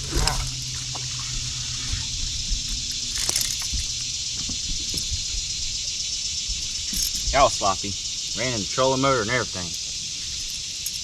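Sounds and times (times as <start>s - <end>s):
water splashing and sloshing: 0.0s - 2.0s
low steady hum: 0.0s - 5.8s.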